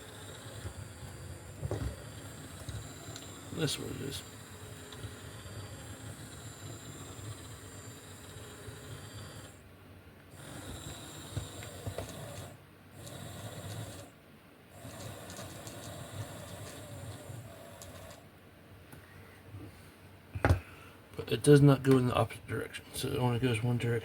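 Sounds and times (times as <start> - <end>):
electric motor whirring whine: 0.0 - 9.6, 10.3 - 14.1.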